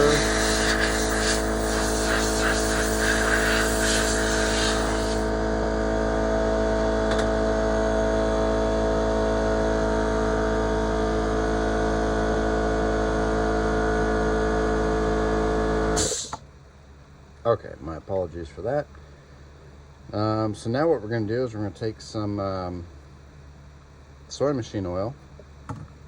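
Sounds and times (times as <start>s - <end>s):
compressed air blast: 0.0s - 5.3s, 16.0s - 16.4s
air compressor motor drone: 0.0s - 17.0s.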